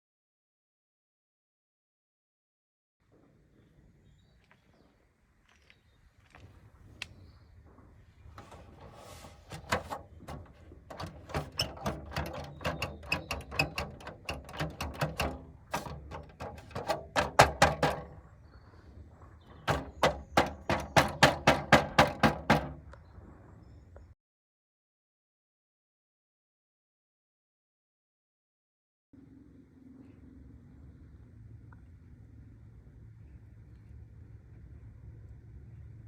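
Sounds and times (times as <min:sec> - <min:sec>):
wheel cover rattling and clacking: 0:08.4 - 0:18.2, 0:19.7 - 0:22.9.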